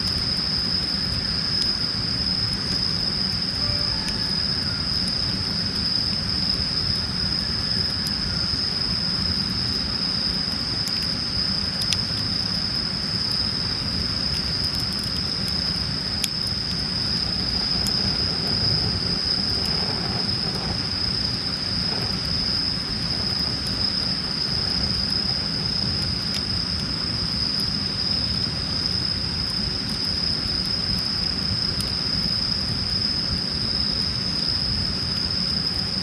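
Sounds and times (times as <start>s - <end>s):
campfire crackling: 0.0s - 36.0s
high-pitched tone: 3.6s - 4.9s
low rumble: 16.5s - 26.1s.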